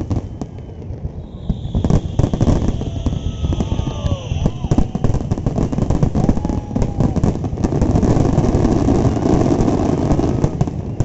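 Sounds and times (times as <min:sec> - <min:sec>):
fireworks bangs and crackles: 0:00.0 - 0:11.0.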